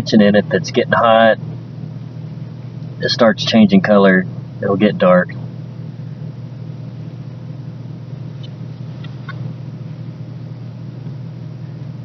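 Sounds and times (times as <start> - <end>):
low rumbling hum: 0.0 - 12.0.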